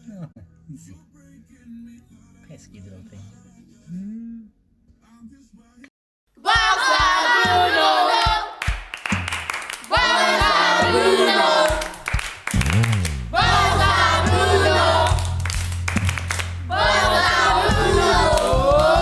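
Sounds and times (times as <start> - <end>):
group of voices singing: 6.4 - 8.6, 9.8 - 12.0, 13.3 - 15.5, 16.6 - 19.0
sharp clap-like hits: 8.2 - 13.3, 14.3 - 16.7.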